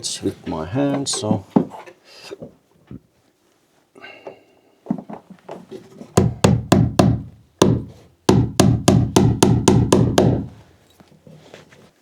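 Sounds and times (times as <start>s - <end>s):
hammer driving nails into wood: 6.2s - 10.6s.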